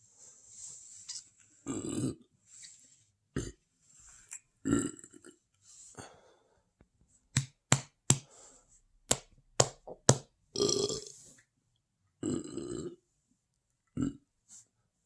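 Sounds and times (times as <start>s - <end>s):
person burping: 1.7s - 2.3s, 3.4s - 3.6s, 4.6s - 5.4s, 10.6s - 11.2s, 12.2s - 13.0s, 14.0s - 14.3s.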